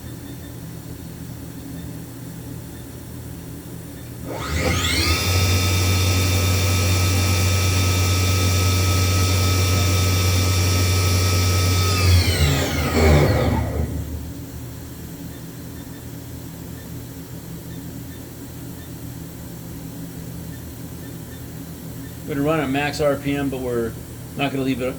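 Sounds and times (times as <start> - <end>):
machine spindle whining: 4.2 - 14.9.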